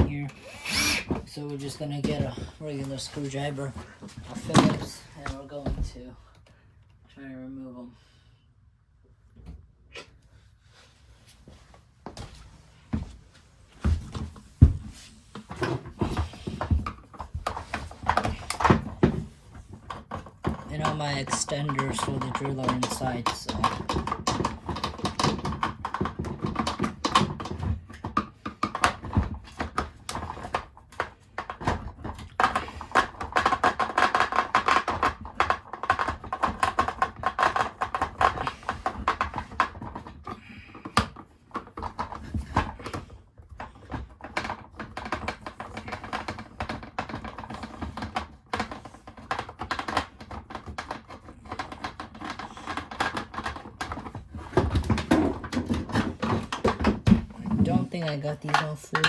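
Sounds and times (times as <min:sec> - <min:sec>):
screwdriver clicking and scraping plastic: 0:15.6 - 0:59.0.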